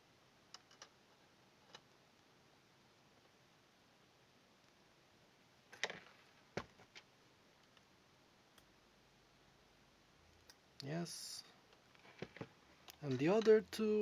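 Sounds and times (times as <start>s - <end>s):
small objects clicking and tapping: 0.5s - 1.0s.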